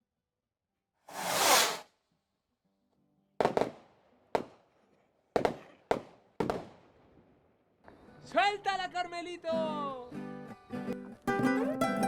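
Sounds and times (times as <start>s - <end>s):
short noisy rush: 1.1s - 1.8s.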